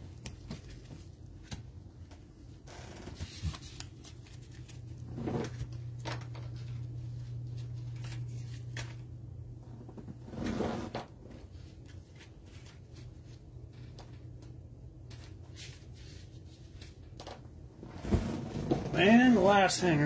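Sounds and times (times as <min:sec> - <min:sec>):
cards and packaging rustling: 0:00.0 - 0:02.3, 0:03.0 - 0:09.1, 0:11.4 - 0:14.2
low steady hum: 0:00.0 - 0:20.0.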